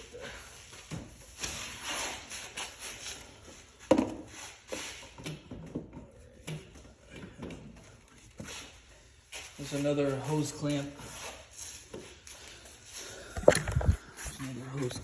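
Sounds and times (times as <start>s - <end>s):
tools rustling and clicking: 11.6s - 14.5s.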